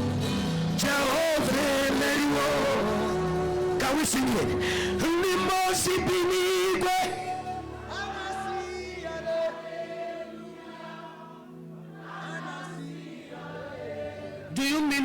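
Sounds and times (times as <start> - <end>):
sustained chords: 0.0 - 9.3
group singing: 7.4 - 14.6.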